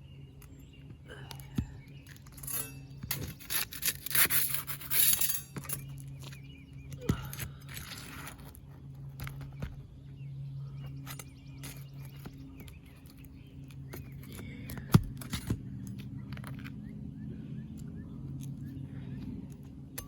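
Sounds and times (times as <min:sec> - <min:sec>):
birds chirping: 0:00.0 - 0:20.0
steady low hum: 0:00.0 - 0:20.0
tools scraping on shingles: 0:01.4 - 0:09.9, 0:10.7 - 0:16.9.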